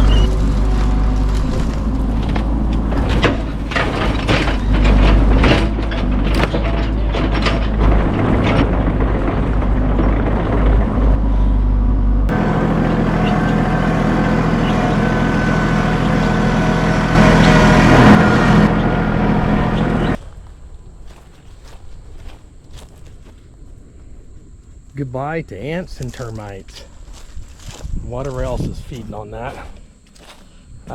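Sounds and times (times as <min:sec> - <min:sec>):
heavy machinery engine: 0:00.0 - 0:20.2.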